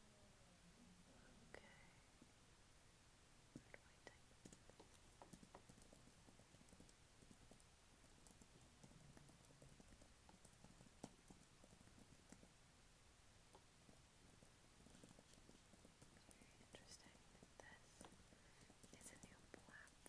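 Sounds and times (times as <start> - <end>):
computer keyboard typing: 4.4 - 12.5, 13.5 - 20.0.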